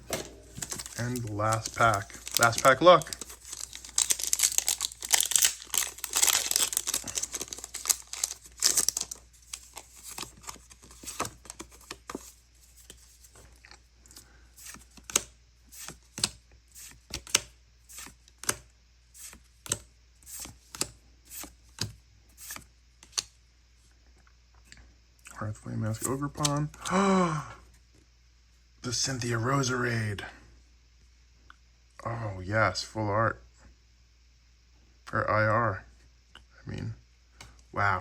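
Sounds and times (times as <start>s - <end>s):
cards flipping clicks: 0.1s - 12.2s, 14.6s - 23.3s
foil wrapper crinkling: 0.5s - 12.3s.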